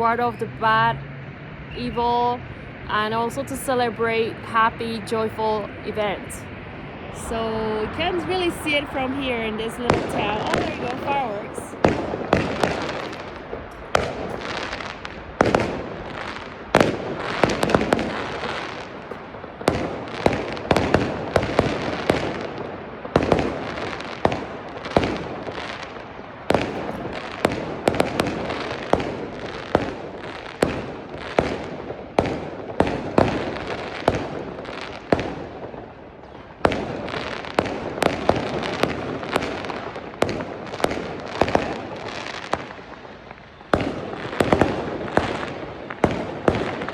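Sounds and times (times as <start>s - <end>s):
fireworks crackling: 1.7s - 46.9s
firecracker bangs: 9.4s - 35.8s, 43.6s - 46.9s.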